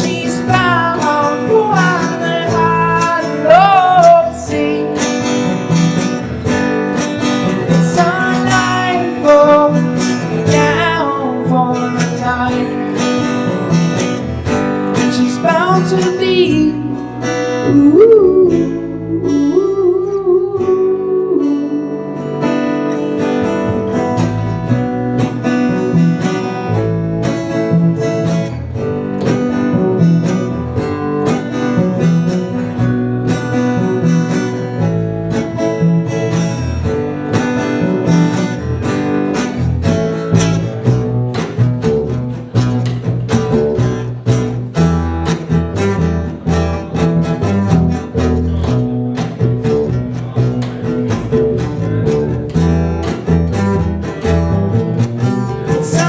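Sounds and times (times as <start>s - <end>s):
acoustic guitar strumming: 0.0s - 56.0s
person singing wordless notes: 15.1s - 22.4s.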